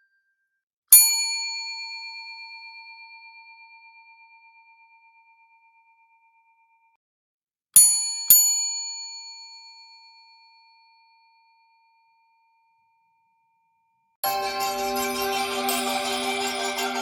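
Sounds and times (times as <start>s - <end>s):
bell dinging: 14.2s - 17.0s.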